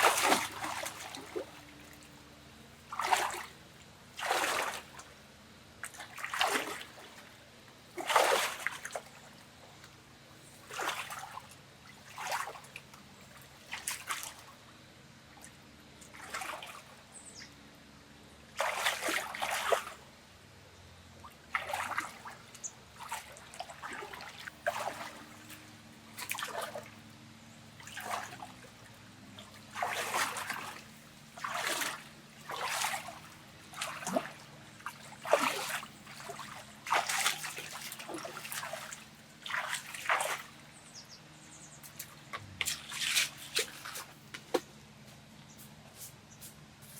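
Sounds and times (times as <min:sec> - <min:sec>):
water splashing: 0:00.0 - 0:01.7, 0:02.9 - 0:03.6, 0:04.2 - 0:05.0, 0:05.9 - 0:07.1, 0:08.0 - 0:09.0, 0:18.6 - 0:20.0, 0:21.5 - 0:25.6, 0:26.2 - 0:27.0, 0:27.8 - 0:40.8, 0:41.9 - 0:44.7.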